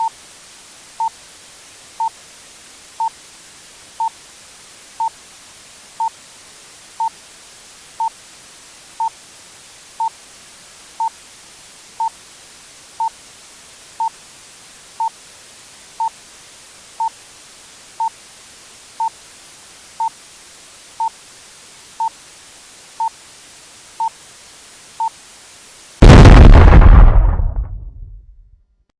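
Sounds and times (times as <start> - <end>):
loud explosion: 26.0 - 28.5.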